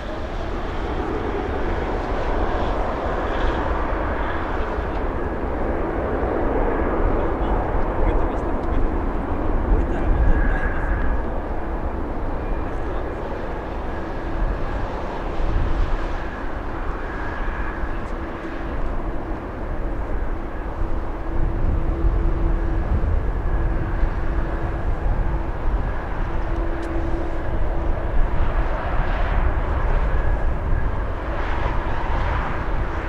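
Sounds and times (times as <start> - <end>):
jet engines roaring: 0.0 - 33.0.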